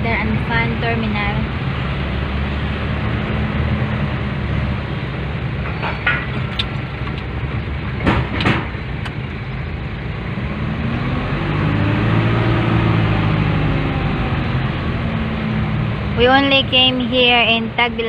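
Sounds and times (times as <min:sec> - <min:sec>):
engine note rising and falling: 0:00.0 - 0:18.0
vehicle road noise: 0:00.0 - 0:18.0
sharp knocks: 0:08.0 - 0:09.2.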